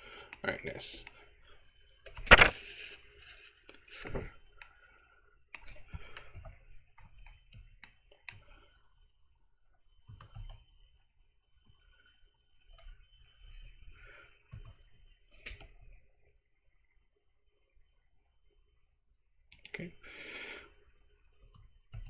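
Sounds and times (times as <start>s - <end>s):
mouse clicking: 2.1s - 2.8s.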